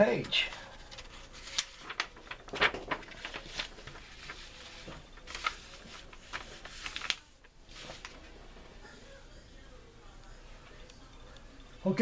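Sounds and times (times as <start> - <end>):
paper rustling: 0.0 - 8.8.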